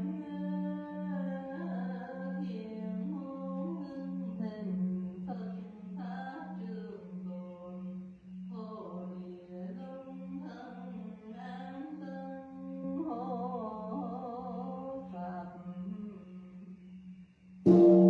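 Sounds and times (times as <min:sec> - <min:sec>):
pulsing low hum: 0:17.7 - 0:18.0.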